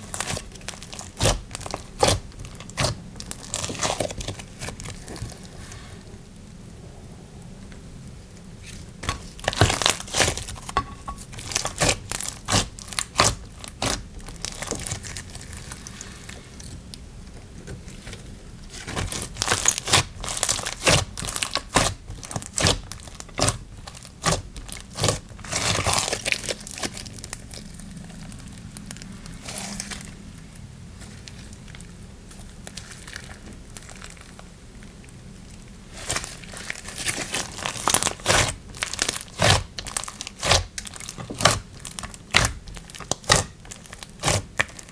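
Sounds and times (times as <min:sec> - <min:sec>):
slime crackling and popping: 0:00.0 - 0:05.5, 0:08.6 - 0:17.0, 0:18.6 - 0:44.9.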